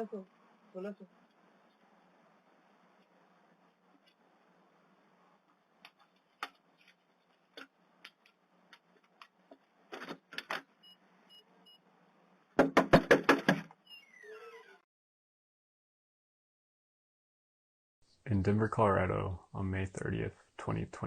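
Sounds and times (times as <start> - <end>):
rapid loud knocks: 12.6 - 13.7.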